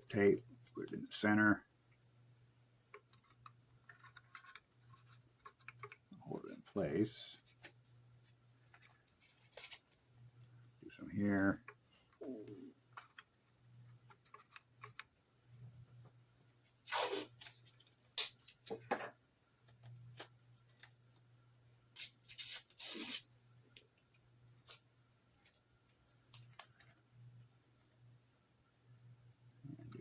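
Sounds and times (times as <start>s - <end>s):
tape ripping off a roll: 16.8s - 17.6s, 22.0s - 23.2s.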